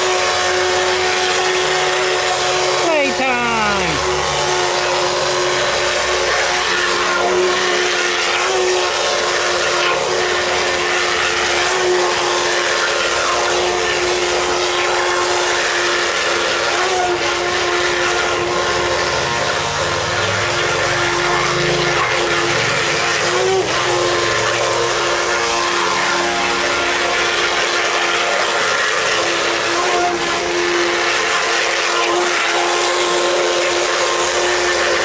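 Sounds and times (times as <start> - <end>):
small electric motor whining: 4.0 - 35.0.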